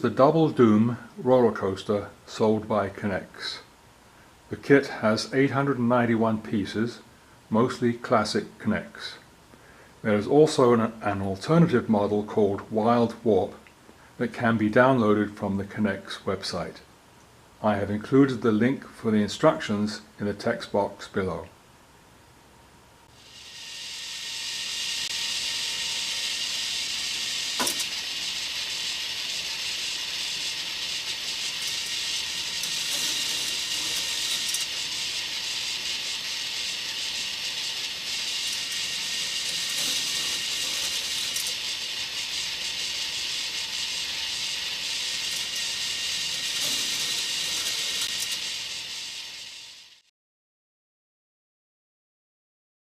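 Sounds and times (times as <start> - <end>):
toy roller coaster rattling: 23.1 - 50.1
sharp click: 27.6 - 27.9.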